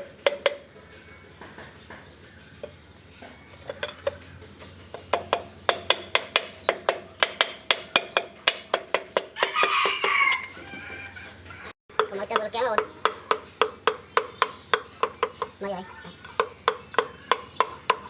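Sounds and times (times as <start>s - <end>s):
metal-on-metal tapping: 0.0s - 0.8s, 2.6s - 10.5s, 11.9s - 18.0s.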